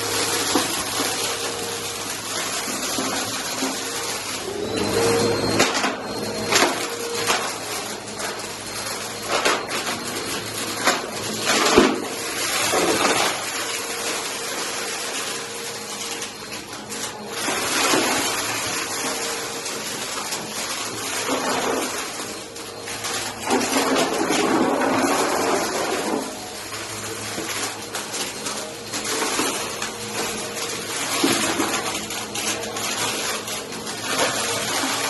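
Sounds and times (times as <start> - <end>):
debris rattling in vacuum: 0.0 - 35.0
vacuum cleaner running: 0.0 - 35.0.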